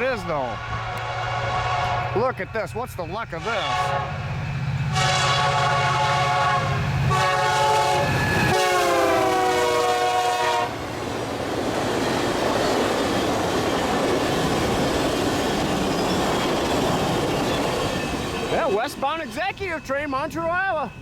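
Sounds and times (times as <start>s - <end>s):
locomotive horn blasts: 0.0s - 2.5s, 3.3s - 4.3s, 4.9s - 10.9s
train wheels rolling on rails: 0.0s - 21.0s.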